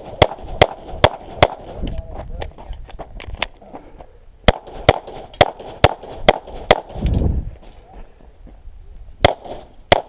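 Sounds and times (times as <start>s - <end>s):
pistol shots: 0.0s - 1.8s, 4.4s - 7.0s, 9.2s - 10.0s.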